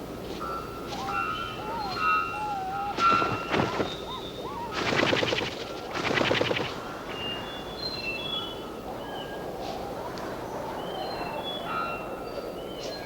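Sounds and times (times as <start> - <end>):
forest birds singing: 0.5 - 13.0
rattling bird calls: 1.0 - 7.6.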